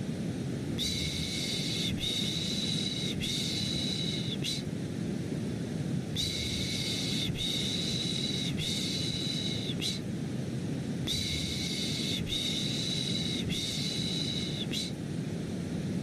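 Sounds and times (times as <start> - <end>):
steady low white noise: 0.0 - 16.0
person shushing: 0.8 - 4.7, 6.2 - 10.0, 11.1 - 15.0.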